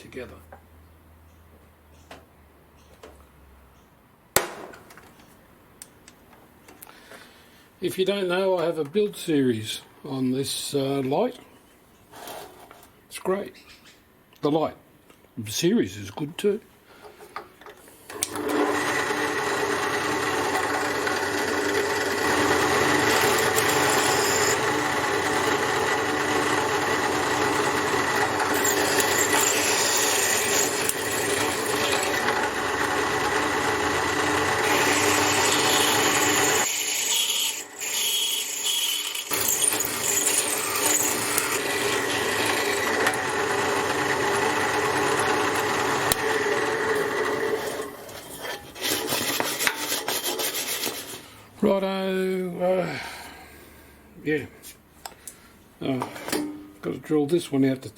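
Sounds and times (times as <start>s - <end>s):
drill press motor running: 18.1s - 36.9s, 39.1s - 47.9s.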